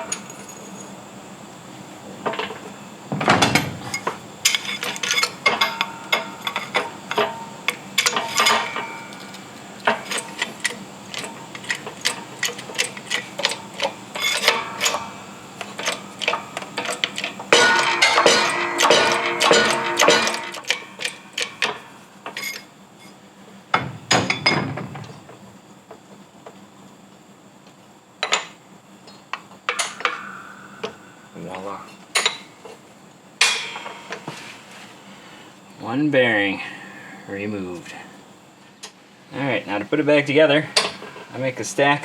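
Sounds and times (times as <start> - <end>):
metallic clinks and clanks: 3.4 - 23.2.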